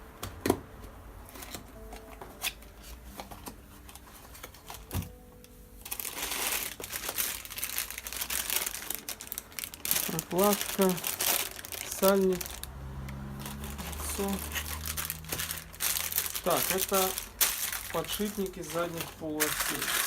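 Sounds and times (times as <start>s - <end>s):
packaging crinkling: 5.8s - 20.0s.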